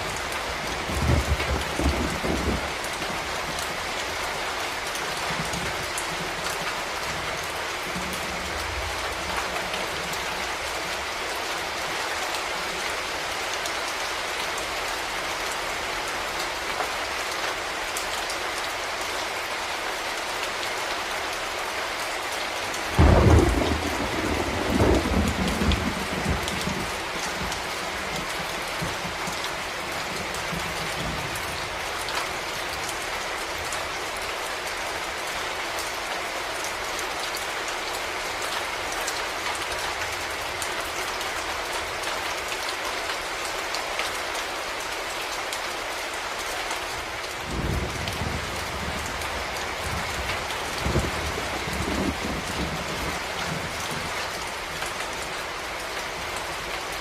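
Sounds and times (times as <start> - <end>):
thunder crack and rumble: 0.0 - 3.6, 23.0 - 29.4, 47.4 - 54.1
steady rain falling: 0.0 - 57.0.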